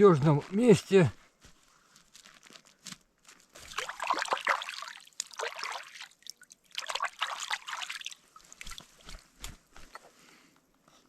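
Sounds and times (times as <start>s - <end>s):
water splashing and trickling: 2.2s - 9.8s.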